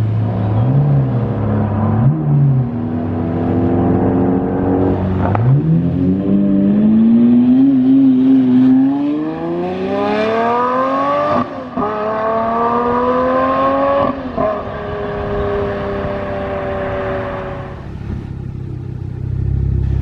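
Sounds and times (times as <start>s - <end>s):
sports car engine accelerating: 0.0s - 20.0s.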